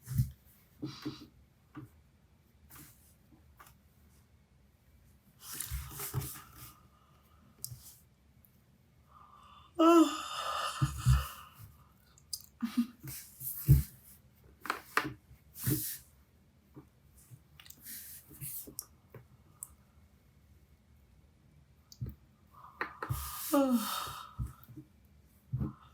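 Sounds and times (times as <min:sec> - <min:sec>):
woman yawning: 0:09.8 - 0:11.3, 0:23.2 - 0:24.3.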